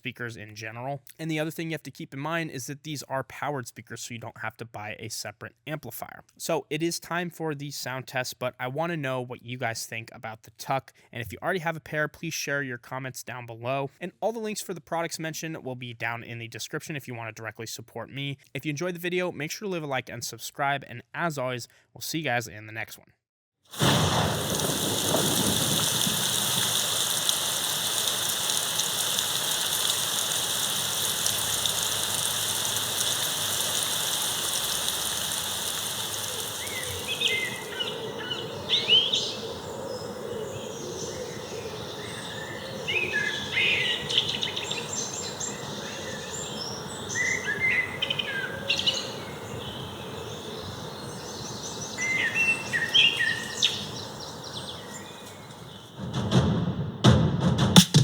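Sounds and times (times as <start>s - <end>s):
rain-like rushing: 23.7s - 38.8s
bird chirps: 36.0s - 56.0s.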